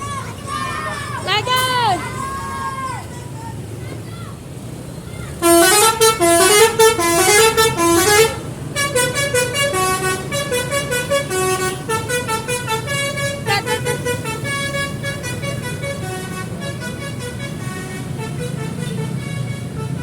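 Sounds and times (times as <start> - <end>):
low engine rumble: 0.0 - 20.0
melodic bus air horn: 5.4 - 20.0.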